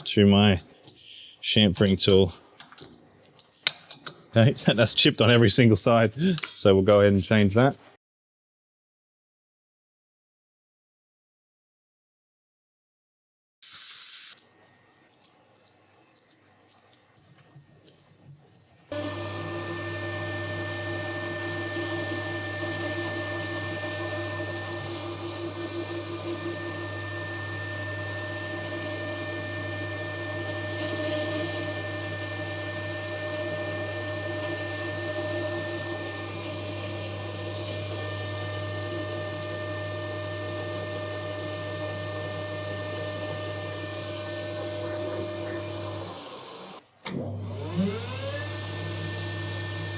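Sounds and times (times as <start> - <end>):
metal lathe motor whining: 18.9 - 49.9.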